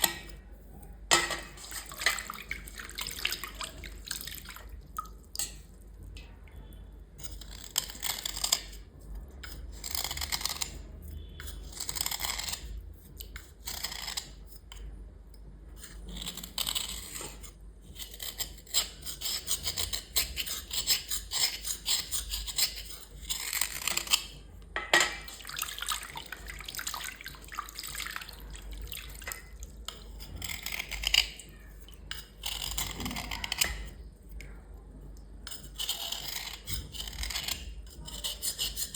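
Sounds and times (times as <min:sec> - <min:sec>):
water splashing and trickling: 0:01.4 - 0:06.1.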